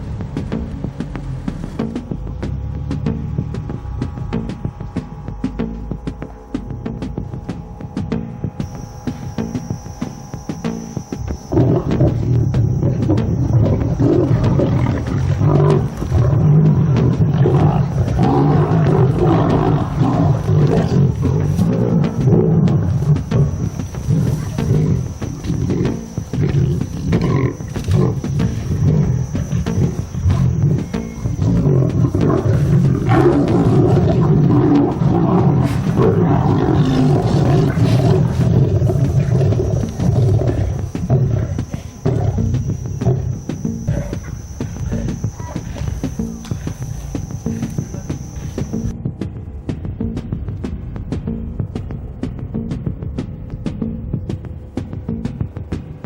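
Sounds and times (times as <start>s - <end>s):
lions growling and snarling: 10.8s - 48.9s.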